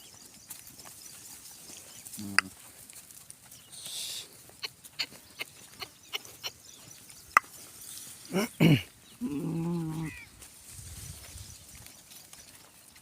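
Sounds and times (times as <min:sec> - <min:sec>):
hooves knocking on hard ground: 0:00.0 - 0:13.0
breathy hiss: 0:03.7 - 0:04.5
horse low call: 0:03.7 - 0:06.6, 0:08.3 - 0:10.3.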